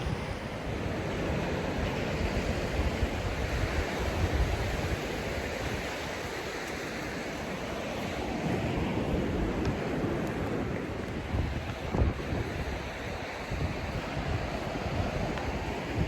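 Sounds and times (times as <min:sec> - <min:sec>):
wind on microphone: 0:00.0 - 0:16.0.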